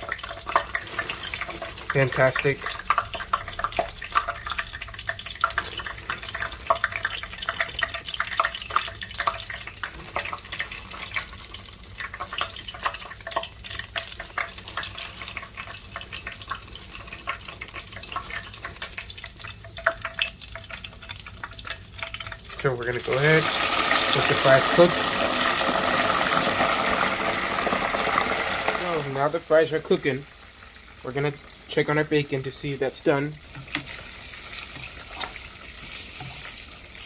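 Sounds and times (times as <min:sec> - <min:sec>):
fries sizzling in hot oil: 0:00.0 - 0:37.0.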